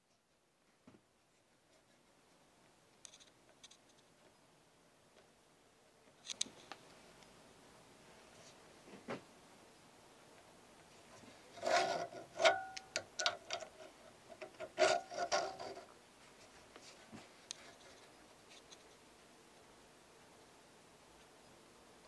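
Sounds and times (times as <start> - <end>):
small hard parts clicking: 11.6 - 15.9.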